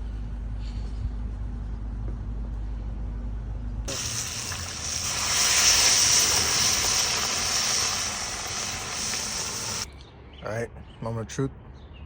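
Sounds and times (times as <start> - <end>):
fish sizzling in hot oil: 3.9 - 9.9.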